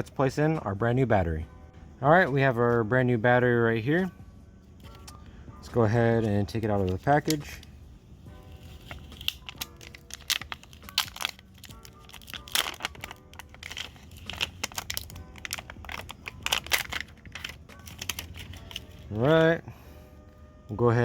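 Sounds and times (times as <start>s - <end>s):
plastic packaging crinkling: 8.5s - 19.4s.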